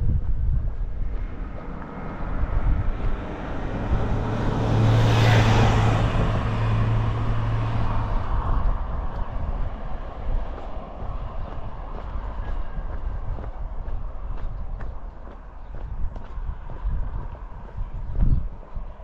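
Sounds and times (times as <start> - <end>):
wind rumble on microphone: 0.0 - 19.0
vehicle driving past: 0.9 - 13.4.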